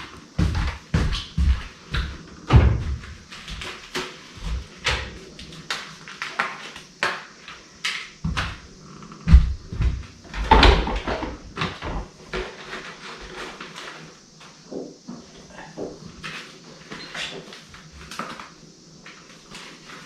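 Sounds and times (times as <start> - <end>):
knocks bumps and clatters: 0.4 - 5.1, 9.2 - 12.6.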